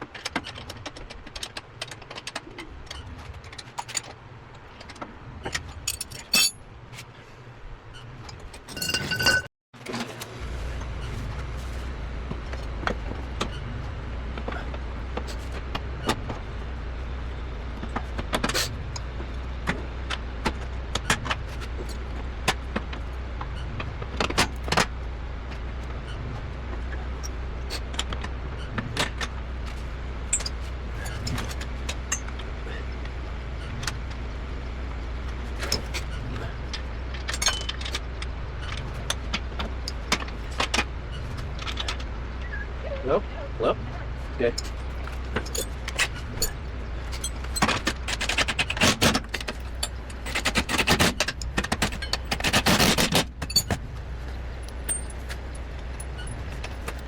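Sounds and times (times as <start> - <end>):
low engine hum: 0.0 - 52.4, 53.2 - 57.0
metal tools clinking: 5.6 - 6.6, 8.7 - 9.5, 44.6 - 53.8, 54.6 - 57.0.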